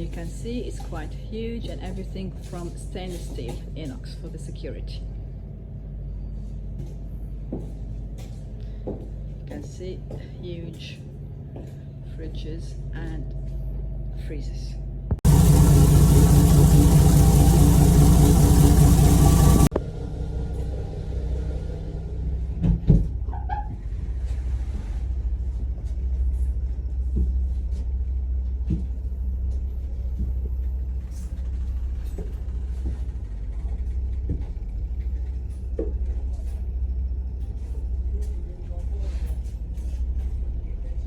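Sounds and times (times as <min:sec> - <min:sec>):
diesel engine rumble: 0:15.2 - 0:22.2.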